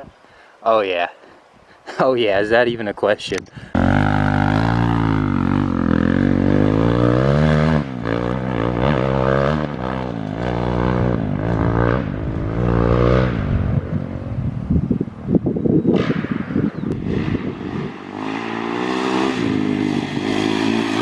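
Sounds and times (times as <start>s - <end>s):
dirt bike engine revving: 3.7s - 14.0s, 15.9s - 21.0s.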